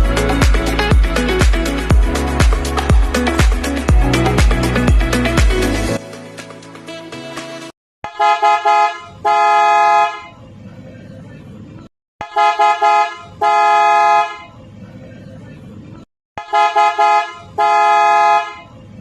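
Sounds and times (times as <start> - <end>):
car horn toots and blasts: 8.0 - 10.4, 12.2 - 14.5, 16.4 - 18.7.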